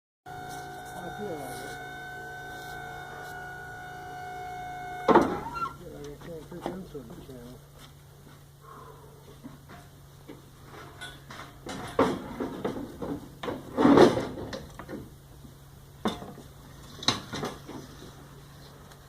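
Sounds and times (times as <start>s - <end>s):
faint low hum: 0.3s - 12.4s.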